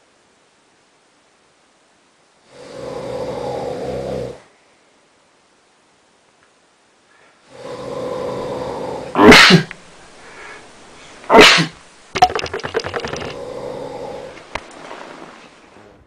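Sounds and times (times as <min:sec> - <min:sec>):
person snoring: 0:02.5 - 0:04.4, 0:07.5 - 0:09.2, 0:12.6 - 0:14.5
loud sharp snorts: 0:07.5 - 0:10.6, 0:11.3 - 0:14.4
rattling flutter: 0:12.2 - 0:13.4.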